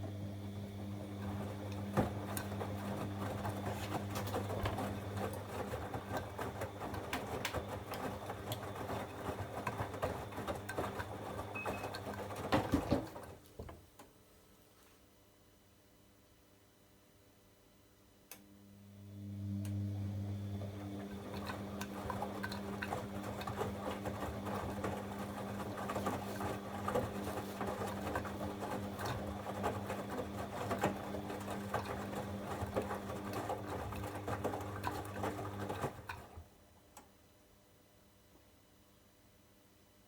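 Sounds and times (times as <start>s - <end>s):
drain pump humming: 0.0s - 13.3s, 19.1s - 36.2s.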